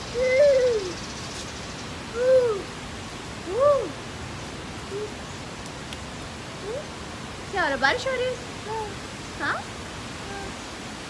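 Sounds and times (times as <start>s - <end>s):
bird cooing: 0.0s - 1.0s, 2.1s - 2.8s, 3.4s - 4.0s, 4.8s - 5.3s, 6.6s - 7.0s
rain hissing: 0.0s - 11.0s.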